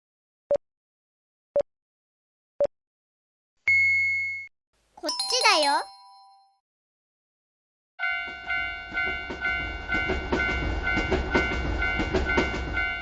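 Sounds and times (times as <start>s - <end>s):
crossing alarm bell ringing: 8.0s - 13.0s
train rumbling: 8.1s - 13.0s
wheels clattering on rails: 8.2s - 13.0s.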